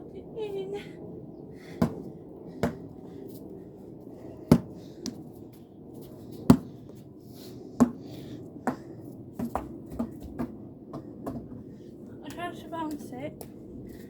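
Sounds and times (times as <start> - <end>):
basketball bouncing on hard floor: 9.4 - 10.6.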